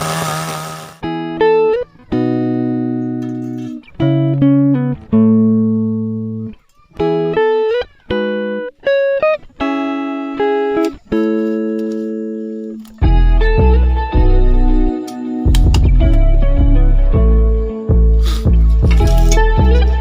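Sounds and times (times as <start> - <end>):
guitar playing chords and notes: 1.0 - 20.0.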